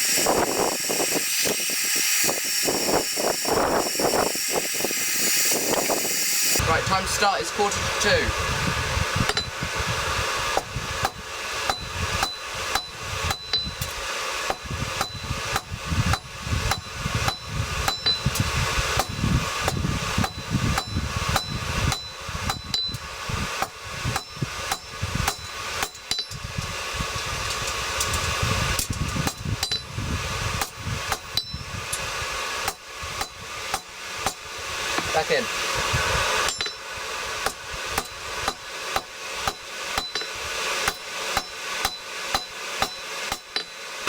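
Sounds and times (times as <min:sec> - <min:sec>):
hammer striking steel on anvil: 0:10.6 - 0:18.3, 0:19.0 - 0:23.0, 0:23.6 - 0:26.4, 0:29.3 - 0:29.9, 0:36.5 - 0:36.8, 0:37.4 - 0:43.8.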